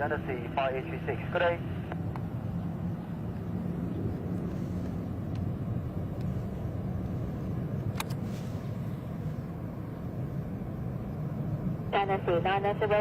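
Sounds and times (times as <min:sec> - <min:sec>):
airliner engine rumble: 0:00.0 - 0:13.0.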